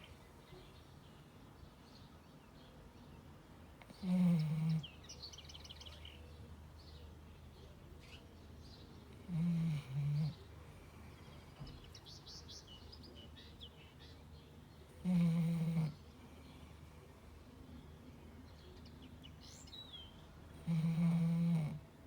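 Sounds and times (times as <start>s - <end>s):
dog snoring: 3.8s - 4.9s, 9.1s - 10.8s, 15.0s - 16.1s, 20.5s - 22.0s.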